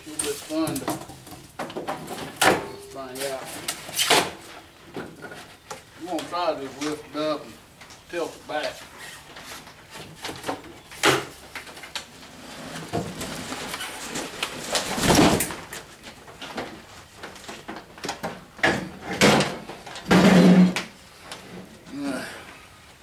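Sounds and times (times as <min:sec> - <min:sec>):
cardboard and foam scraping: 0:12.3 - 0:15.4
heavy metal cart knocks and thumps: 0:17.6 - 0:20.9.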